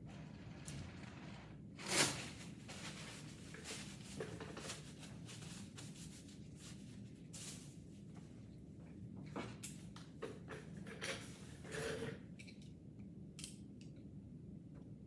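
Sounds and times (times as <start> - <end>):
rustling handling noises: 1.9 - 8.4.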